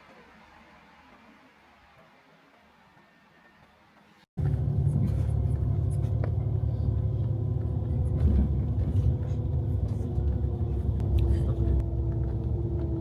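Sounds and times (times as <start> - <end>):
vehicle engine hum and road noise: 4.4 - 13.0.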